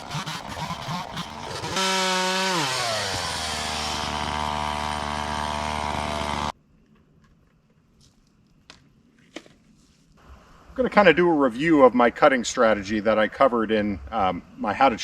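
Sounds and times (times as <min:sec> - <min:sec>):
chainsaw cutting and revving: 0:00.0 - 0:06.5.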